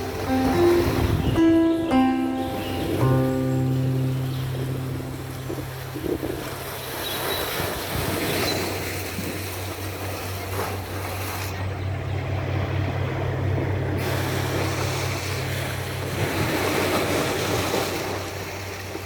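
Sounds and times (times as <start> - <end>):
broad rushing noise: 0.0 - 8.2, 9.8 - 18.4
low motor hum: 10.1 - 18.0.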